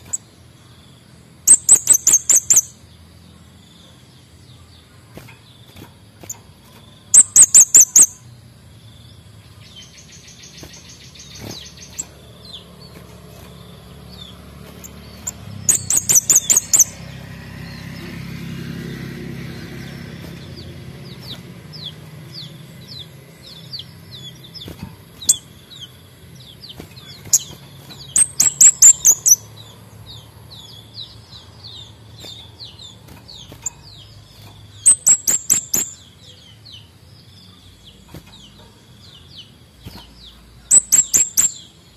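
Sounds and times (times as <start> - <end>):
bird trill: 0.0 - 41.9
soft bird chirps: 0.0 - 41.9
songbird high-pitched ticking notes: 0.1 - 3.1, 7.0 - 8.9, 9.5 - 18.0, 19.5 - 37.3, 40.3 - 41.9.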